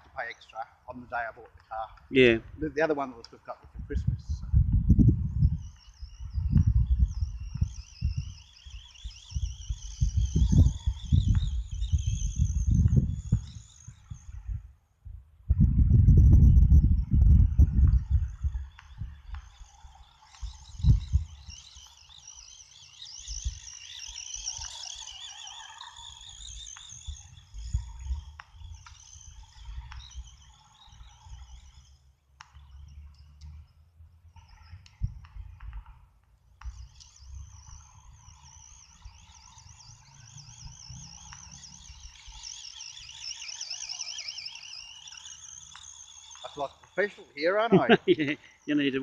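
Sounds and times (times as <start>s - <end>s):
wind rumble on microphone: 3.6s - 21.5s, 27.0s - 30.4s, 34.4s - 38.2s
remote-control car motor whining: 4.9s - 14.6s, 16.3s - 47.7s.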